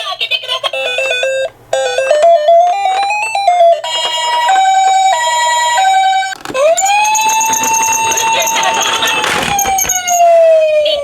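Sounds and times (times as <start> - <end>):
two-tone ambulance siren: 4.5 - 11.0
siren winding up to a wail: 6.6 - 11.0
stepped beeping tones: 6.8 - 10.1.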